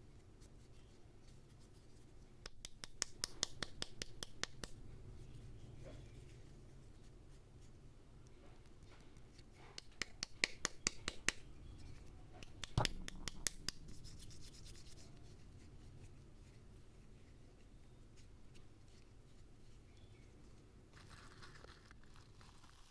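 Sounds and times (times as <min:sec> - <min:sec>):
sharp clicks and taps: 0:02.4 - 0:04.8, 0:09.8 - 0:11.5, 0:12.4 - 0:14.8.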